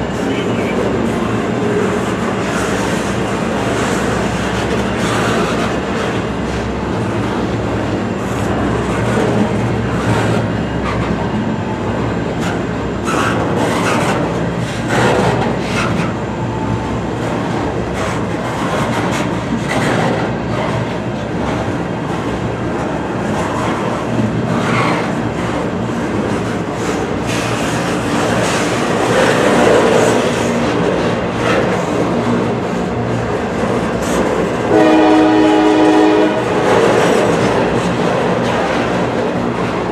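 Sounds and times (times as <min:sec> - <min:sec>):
freight train cars rolling past: 0:00.0 - 0:39.9
wheels clacking over rail joints: 0:12.2 - 0:16.2.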